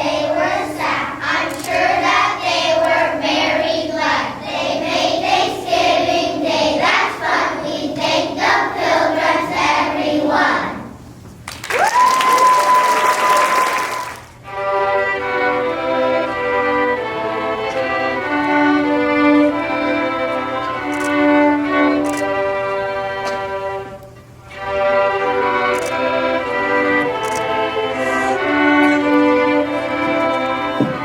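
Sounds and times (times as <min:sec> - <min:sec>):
violins playing: 0:00.0 - 0:10.9, 0:14.4 - 0:31.0
children's choir singing: 0:00.0 - 0:11.0, 0:14.5 - 0:24.0, 0:24.6 - 0:31.0
applause: 0:11.4 - 0:14.4.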